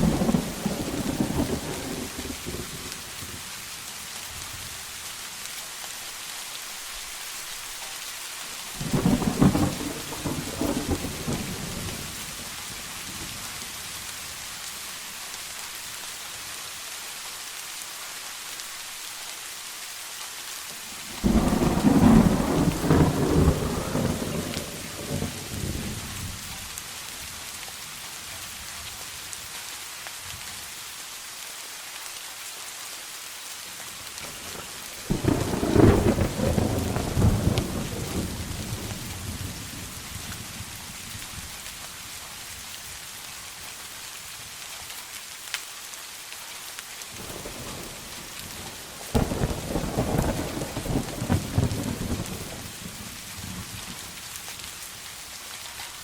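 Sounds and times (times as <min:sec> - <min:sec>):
rolling thunder: 0:00.0 - 0:03.0, 0:08.8 - 0:12.5, 0:21.1 - 0:26.2, 0:35.1 - 0:40.6, 0:49.1 - 0:54.0
steady rain: 0:00.0 - 0:56.0.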